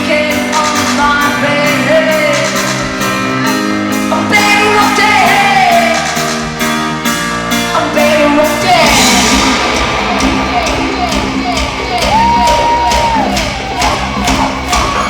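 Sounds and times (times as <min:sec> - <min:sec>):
woman singing: 0:00.0 - 0:06.5, 0:07.7 - 0:09.6
rock band playing live: 0:00.0 - 0:15.0
steady drum beat: 0:08.7 - 0:15.0.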